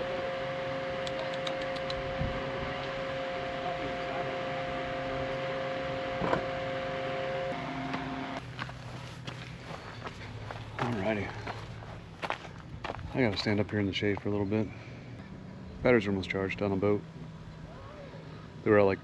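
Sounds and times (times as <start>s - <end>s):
whining tones: 0.0s - 12.8s
machine whirring hum: 0.0s - 19.0s.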